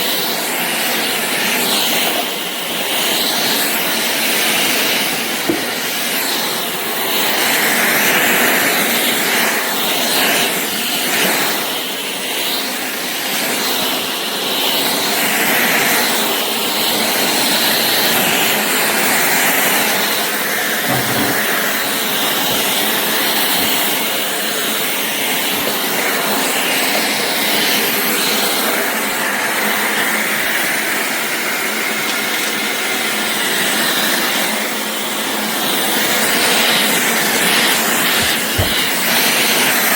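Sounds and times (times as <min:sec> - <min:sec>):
stick vacuum running: 0:00.1 - 0:12.8, 0:14.0 - 0:39.9.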